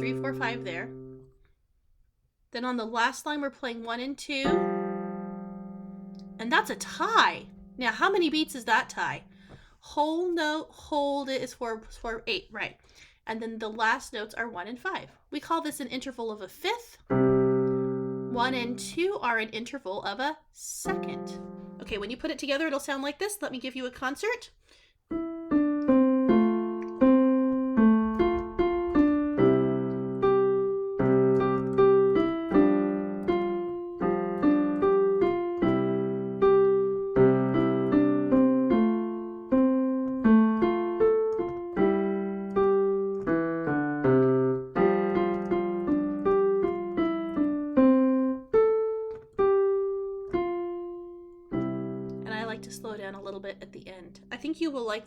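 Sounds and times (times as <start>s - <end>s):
piano playing simple melody: 0.0s - 1.5s, 4.4s - 9.7s, 17.1s - 19.3s, 20.8s - 22.2s, 25.1s - 55.0s.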